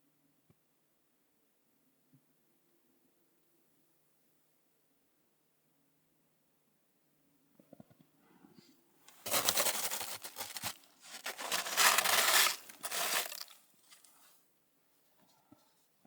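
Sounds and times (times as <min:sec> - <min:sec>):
crinkling and tearing rustle: 0:09.1 - 0:14.3.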